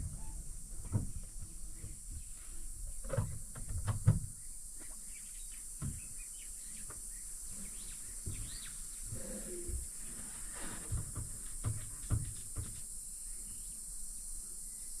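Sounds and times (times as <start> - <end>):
steady high hiss: 0.0 - 15.0
bird chirps: 4.4 - 9.1.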